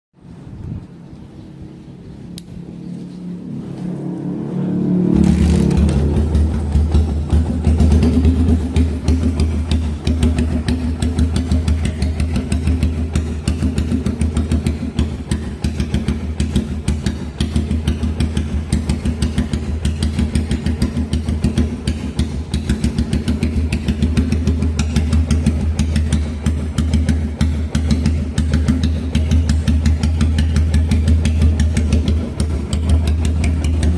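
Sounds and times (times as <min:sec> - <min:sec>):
motorcycle engine idling: 0:05.1 - 0:33.9.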